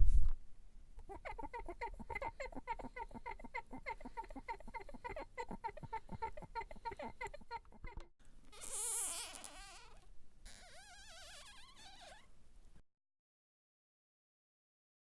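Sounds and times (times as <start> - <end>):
short high squeaks: 8.5 - 12.3.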